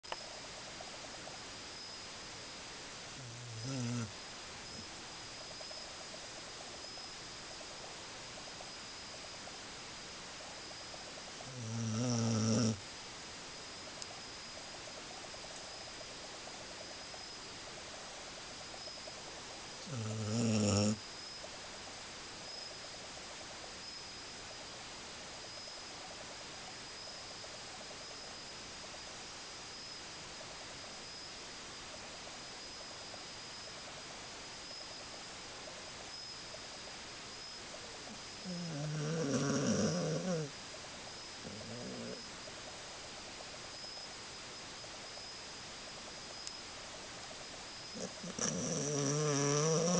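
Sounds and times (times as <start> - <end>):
pet snoring: 3.1 - 4.2, 11.4 - 12.8, 19.8 - 21.0, 38.1 - 40.6, 41.4 - 42.4, 47.9 - 49.9.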